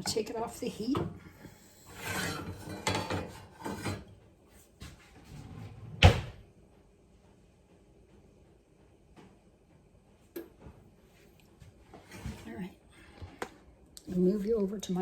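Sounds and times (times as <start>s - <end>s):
pot scraping and clattering: 0.0s - 4.2s.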